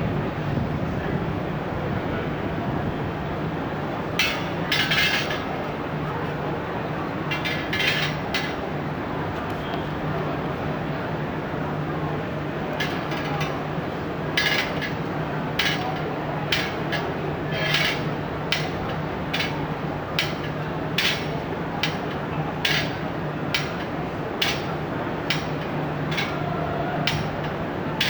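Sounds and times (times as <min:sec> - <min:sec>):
steel bars clanking: 0:04.2 - 0:05.6, 0:07.2 - 0:08.7, 0:12.7 - 0:28.0.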